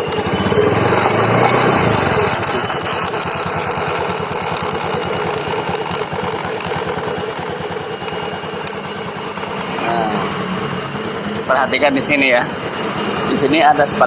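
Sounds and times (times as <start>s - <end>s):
scooter engine settling to idle: 0.0s - 14.0s
scattered clicks: 1.0s - 9.9s.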